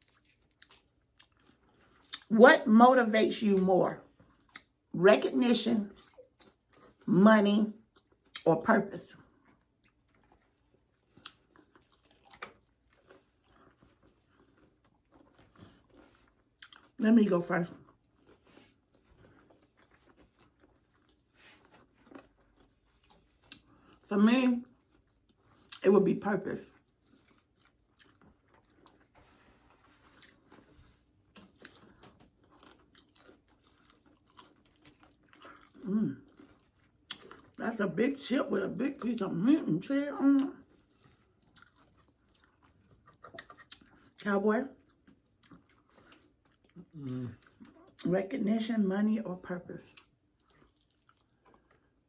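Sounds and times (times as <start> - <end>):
tortilla chips crunching: 0.0 - 2.3, 9.1 - 17.0, 17.6 - 25.9, 26.6 - 38.3, 40.5 - 48.1, 49.8 - 52.0
faint chewing: 0.0 - 2.7, 3.3 - 7.1, 7.7 - 48.8, 49.4 - 52.0
soft crunches of chips: 9.3 - 17.0, 26.7 - 37.6.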